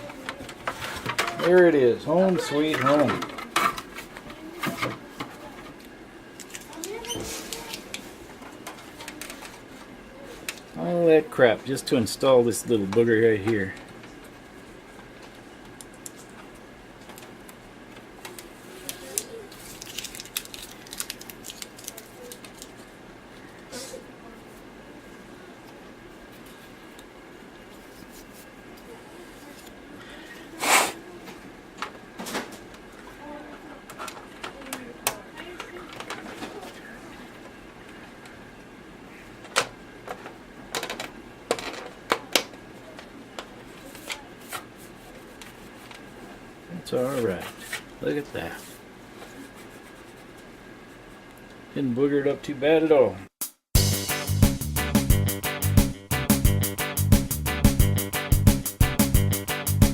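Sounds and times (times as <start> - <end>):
short scrape: 30.6 - 31.0.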